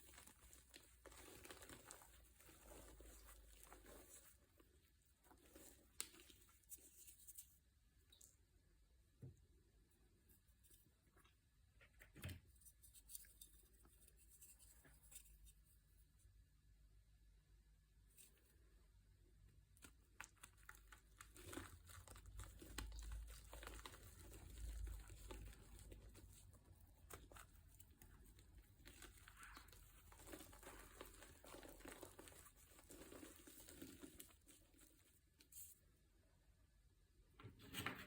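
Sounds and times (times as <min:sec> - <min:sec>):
crinkling and crackling: 0:00.0 - 0:08.4, 0:19.6 - 0:35.9.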